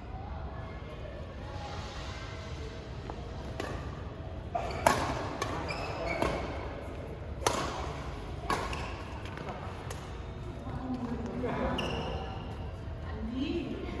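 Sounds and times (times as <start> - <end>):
low hall hum: 0.0 - 14.0
rackets hitting shuttlecock: 4.6 - 6.7, 7.4 - 10.1.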